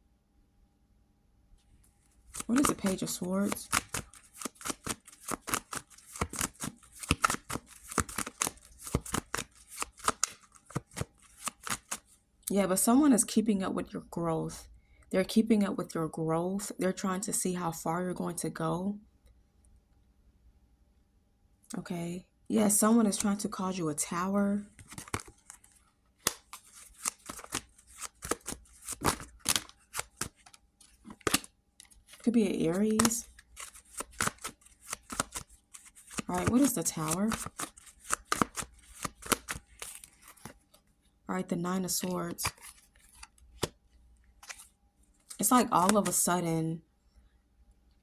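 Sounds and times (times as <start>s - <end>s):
cards being shuffled: 2.3s - 12.1s, 23.0s - 23.4s, 24.7s - 40.8s, 42.0s - 43.8s, 44.4s - 46.3s.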